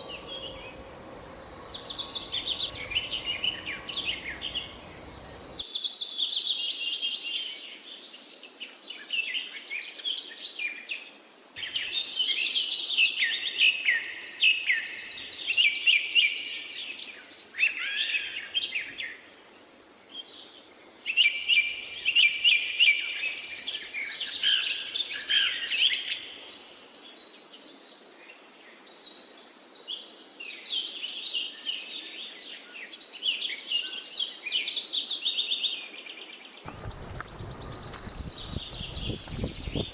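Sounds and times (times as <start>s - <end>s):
birds chirping and trilling: 0.0s - 5.6s, 36.7s - 39.9s.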